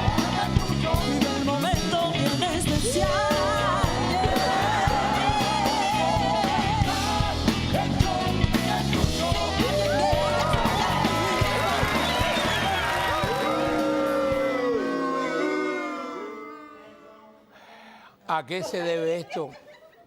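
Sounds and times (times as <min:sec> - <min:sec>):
drum kit: 0:00.0 - 0:14.8
rock pop band playing: 0:00.0 - 0:14.8.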